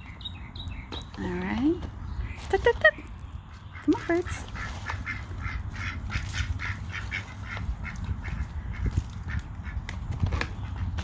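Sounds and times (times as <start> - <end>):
ducks quacking: 3.6 - 9.9.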